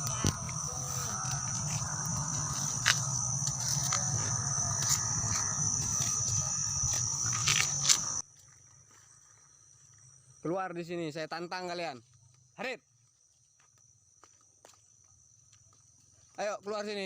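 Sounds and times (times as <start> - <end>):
low hum: 0.0 - 8.2
crickets trilling: 0.0 - 17.0.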